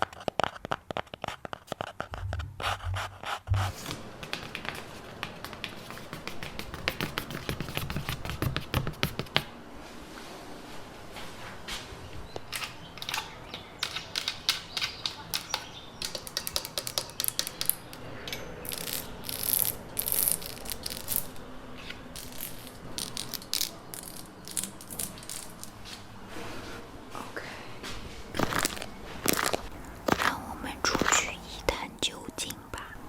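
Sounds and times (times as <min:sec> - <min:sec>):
objects tapped and poked: 0:00.0 - 0:09.5, 0:12.4 - 0:21.3.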